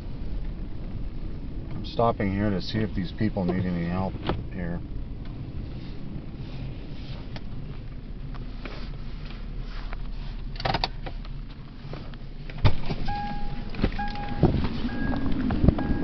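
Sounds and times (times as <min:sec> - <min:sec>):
car engine running: 0:00.0 - 0:16.0
two-tone warning chime: 0:13.1 - 0:16.0
wind buffeting microphone: 0:13.6 - 0:16.0.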